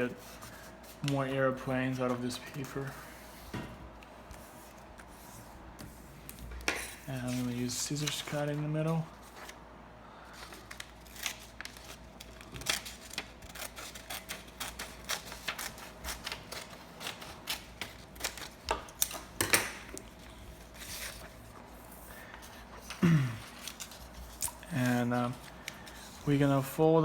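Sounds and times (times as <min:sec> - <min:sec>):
scissors snipping paper: 0:10.6 - 0:19.2.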